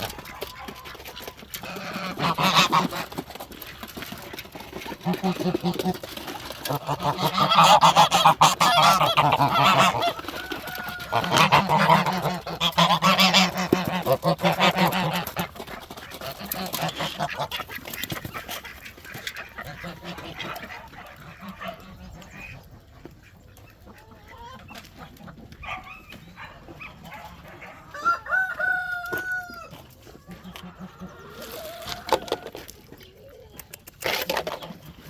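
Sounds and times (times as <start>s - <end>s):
poultry honking: 0.0s - 3.0s, 6.7s - 15.5s, 16.2s - 22.6s
hens clucking: 0.0s - 35.0s
rooster crowing: 10.3s - 11.5s, 27.8s - 29.8s.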